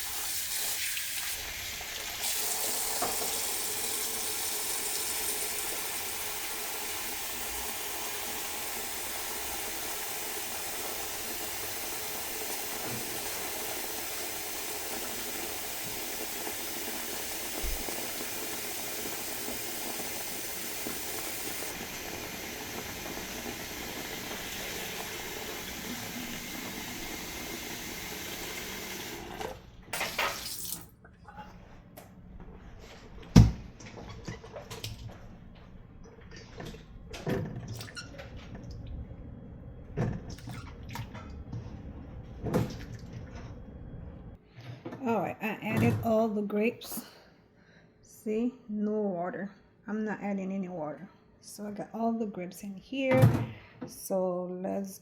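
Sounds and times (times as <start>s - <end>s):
water running from a tap: 0.0s - 30.9s, 37.8s - 38.8s.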